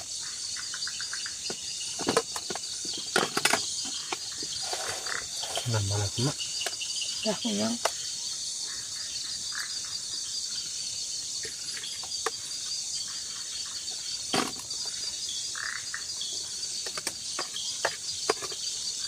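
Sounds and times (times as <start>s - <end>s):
crickets and insects chorus: 0.0s - 19.0s.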